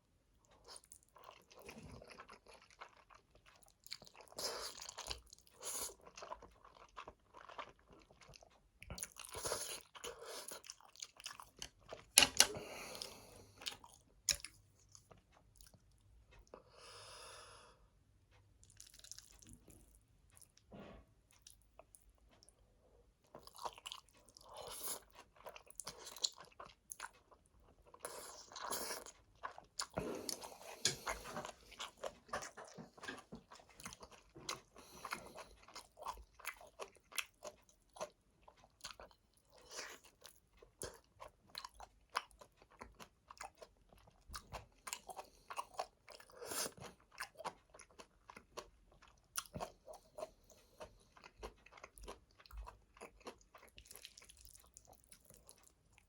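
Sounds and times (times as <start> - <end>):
wet chewing of noodles: 0.2 - 56.0.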